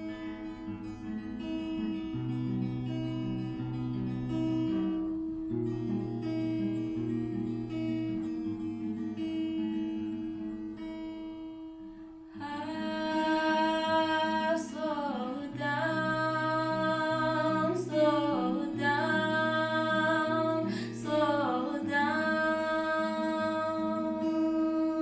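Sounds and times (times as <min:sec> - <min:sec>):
acoustic guitar: 0:00.0 - 0:25.0
woman singing long notes: 0:12.4 - 0:25.0.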